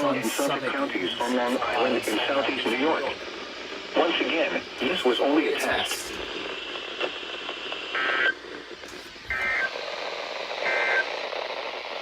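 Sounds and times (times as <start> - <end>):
digital data bursts: 0.0 - 3.2, 3.8 - 6.1, 9.2 - 11.7
static hiss: 0.0 - 12.0.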